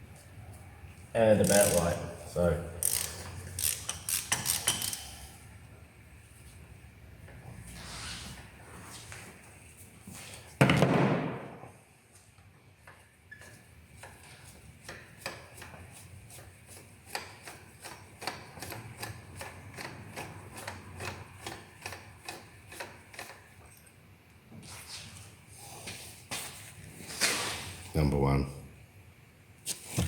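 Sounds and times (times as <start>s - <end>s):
ratchet wrench clicking: 1.4s - 2.0s, 2.8s - 5.3s.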